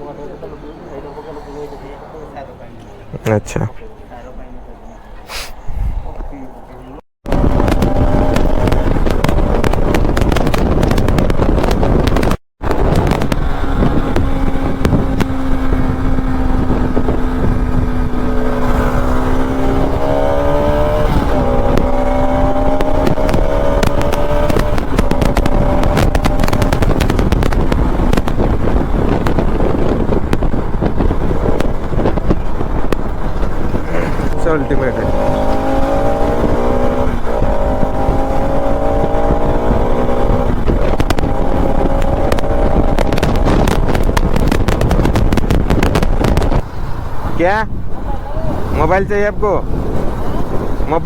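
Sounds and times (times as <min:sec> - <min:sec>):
heavy wind noise: 0:00.0 - 0:51.0
motorcycle engine running: 0:07.3 - 0:47.2.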